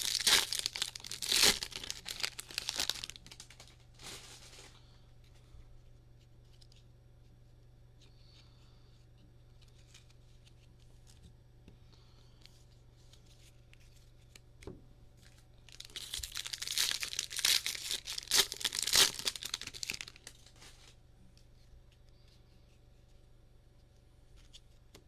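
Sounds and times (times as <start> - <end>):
foil wrapper tearing and crinkling: 0.0 - 4.7, 15.7 - 21.0.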